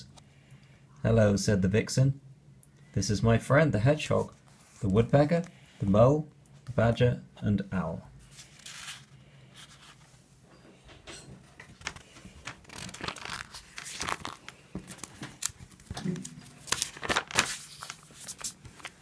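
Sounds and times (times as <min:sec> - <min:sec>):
paper rustling and crinkling: 0:08.2 - 0:10.2, 0:11.6 - 0:19.0.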